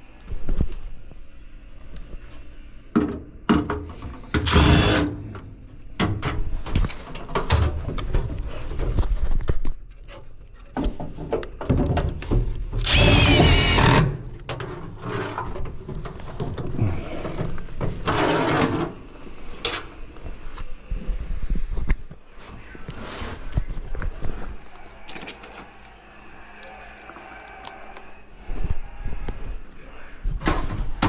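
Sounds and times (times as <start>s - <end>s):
cordless power driver whirring: 4.4s - 5.1s, 12.8s - 14.1s.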